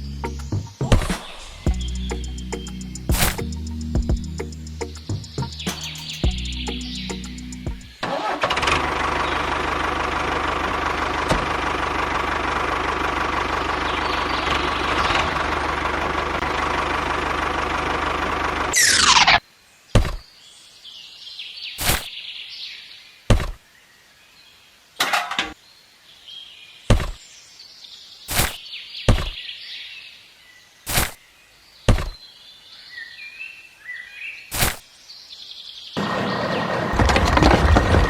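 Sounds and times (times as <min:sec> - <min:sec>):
faint bird chirps: 0:00.0 - 0:08.0
loud mechanical noise: 0:08.0 - 0:19.4, 0:36.0 - 0:38.0
sharp knocks: 0:20.0 - 0:20.2, 0:23.3 - 0:23.6, 0:26.9 - 0:27.2, 0:28.4 - 0:29.4, 0:31.9 - 0:32.2.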